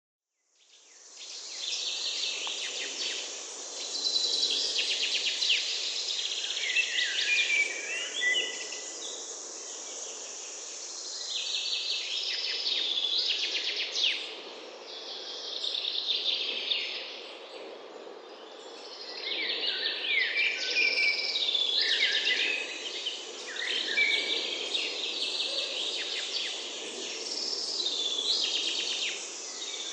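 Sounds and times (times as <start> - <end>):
birds singing: 3.8 - 9.8, 18.4 - 29.9.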